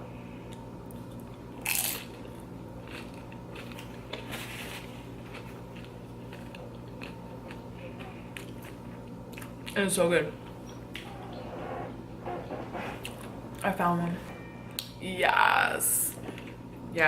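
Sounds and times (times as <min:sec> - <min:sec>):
chewing crunches: 0:00.5 - 0:04.3, 0:05.2 - 0:09.8
tortilla chips crunching: 0:01.0 - 0:09.8.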